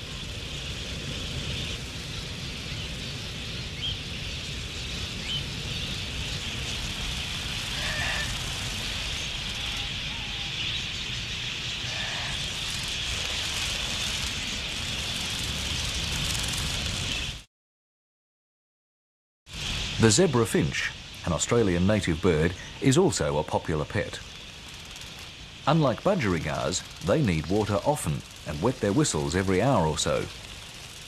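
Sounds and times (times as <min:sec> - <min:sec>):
flock of budgerigars chattering: 0:02.6 - 0:16.3, 0:20.8 - 0:31.0
single bird calls: 0:07.6 - 0:11.0, 0:11.6 - 0:13.5.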